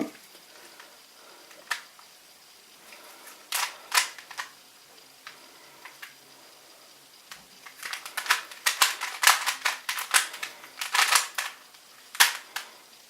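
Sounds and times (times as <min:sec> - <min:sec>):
puzzle cube plastic clicks: 0:03.5 - 0:04.6, 0:07.3 - 0:12.7.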